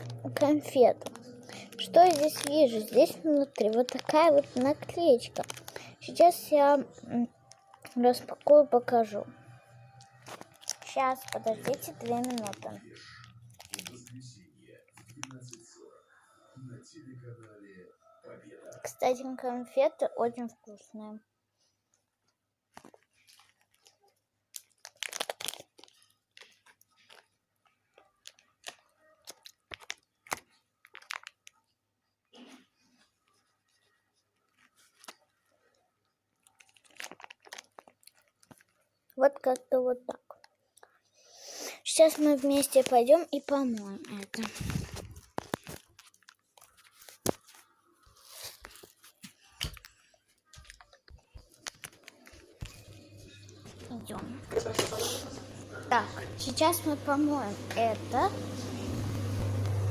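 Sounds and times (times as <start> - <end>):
candy crunching while chewed: 0.0 - 9.2, 9.8 - 14.3, 22.7 - 31.8, 34.3 - 41.0, 42.2 - 55.6
small objects clicking and tapping: 22.7 - 31.7, 36.4 - 38.8.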